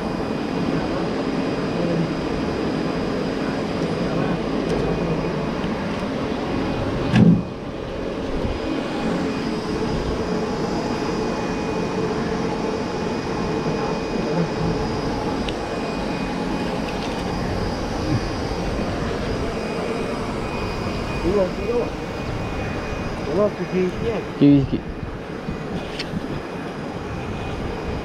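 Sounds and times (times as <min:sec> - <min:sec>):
mechanical hum: 0:00.0 - 0:28.0.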